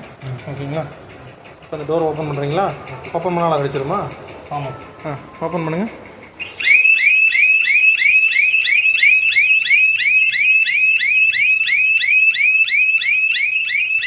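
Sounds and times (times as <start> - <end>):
burglar alarm siren whooping: 6.4 - 14.0.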